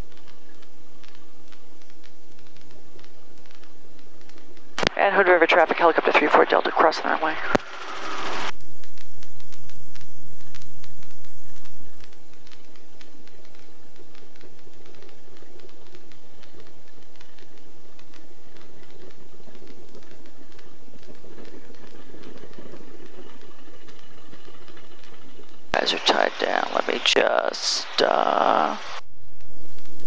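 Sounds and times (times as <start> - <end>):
small ticks: 0.0 - 4.8, 7.5 - 25.8
helicopter engine and rotor: 4.9 - 8.5, 14.4 - 29.0.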